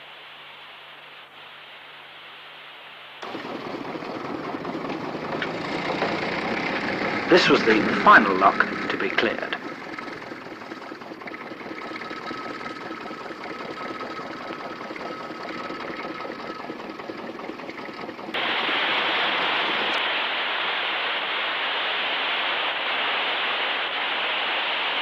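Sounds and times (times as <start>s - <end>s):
loud steady hiss: 0.0s - 15.8s, 18.4s - 25.0s
fast mechanical clatter: 3.2s - 18.5s.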